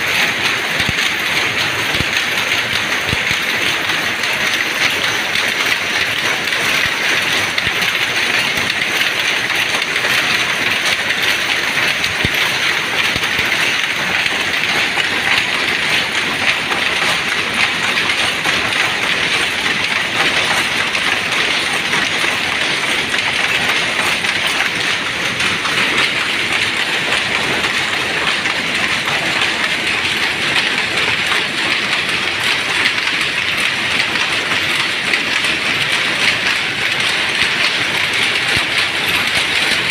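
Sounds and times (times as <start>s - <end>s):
power looms clattering: 0.0s - 39.9s.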